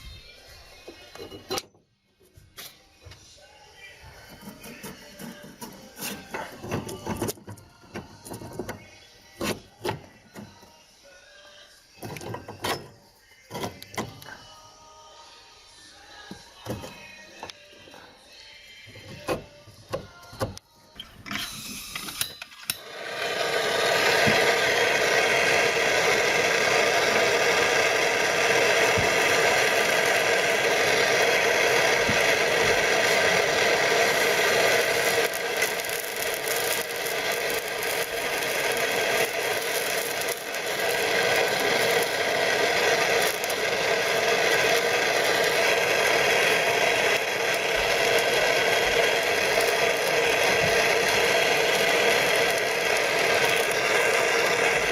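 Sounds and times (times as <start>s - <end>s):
propane torch hissing: 22.8s - 54.9s.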